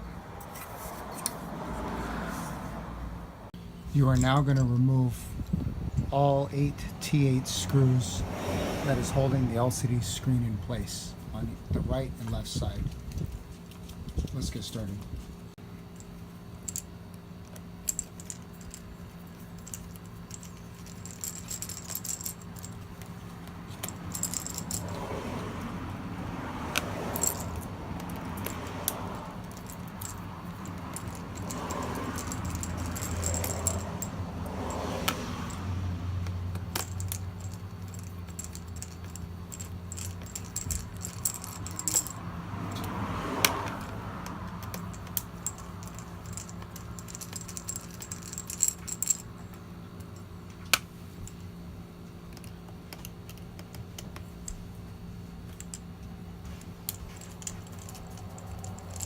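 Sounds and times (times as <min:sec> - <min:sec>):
low steady hum: 0:02.5 - 0:59.0
metal screws clinking: 0:16.0 - 0:25.2, 0:26.7 - 0:35.6, 0:36.5 - 0:51.4, 0:56.5 - 0:59.0.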